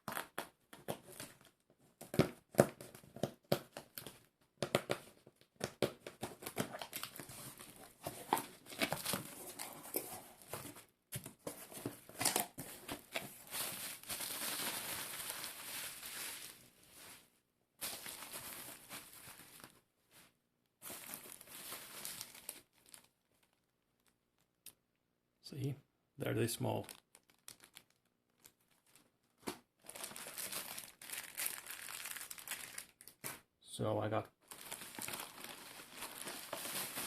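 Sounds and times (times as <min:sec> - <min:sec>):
packaging crinkling and rustling: 0:00.0 - 0:19.8, 0:20.8 - 0:24.5, 0:26.6 - 0:33.4, 0:34.4 - 0:37.0
packaging tearing: 0:26.9 - 0:28.5, 0:29.9 - 0:33.4, 0:34.5 - 0:37.0.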